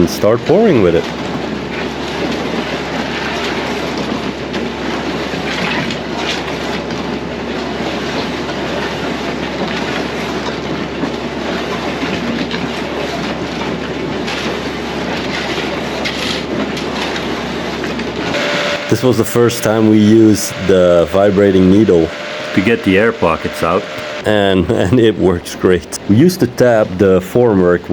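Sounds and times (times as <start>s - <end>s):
tractor engine: 0.0s - 2.0s, 18.1s - 27.5s
excavator working: 0.0s - 27.6s.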